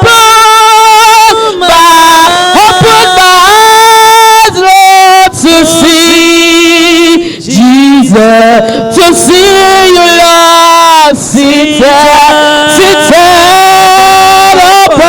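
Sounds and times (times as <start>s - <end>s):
person singing gospel: 0.0s - 15.0s.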